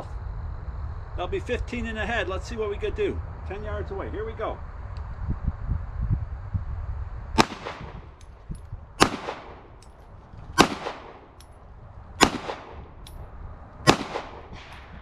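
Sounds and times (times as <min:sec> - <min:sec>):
pistol shots: 0:07.4 - 0:08.2, 0:09.0 - 0:09.9, 0:10.6 - 0:11.5, 0:12.2 - 0:13.2, 0:13.8 - 0:15.0.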